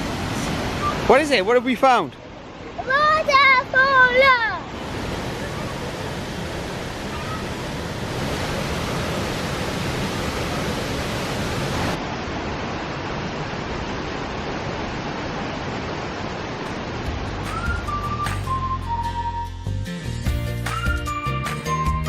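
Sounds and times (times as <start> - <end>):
waterfall rushing: 0.0 - 18.6
music with whistle-like notes: 17.4 - 22.0.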